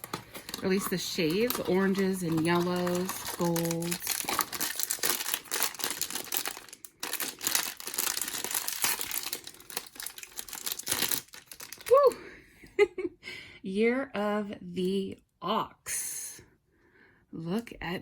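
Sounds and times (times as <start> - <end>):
plastic wrapping crinkling and tearing: 0.0 - 12.2.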